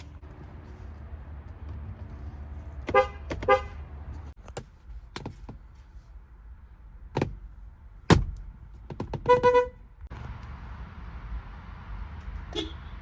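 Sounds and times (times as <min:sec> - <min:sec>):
car horn honking: 0:02.8 - 0:04.0, 0:09.2 - 0:09.8, 0:12.5 - 0:13.0.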